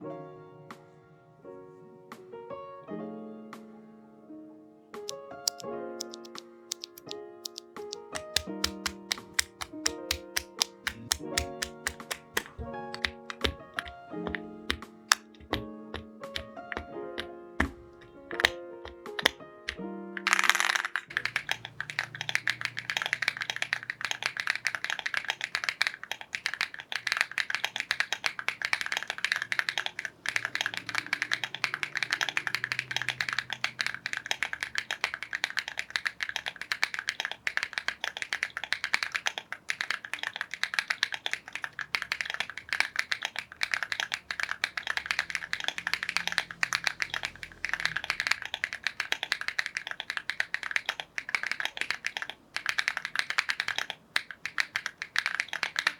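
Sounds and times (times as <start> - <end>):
mechanical keyboard typing: 5.1 - 55.9.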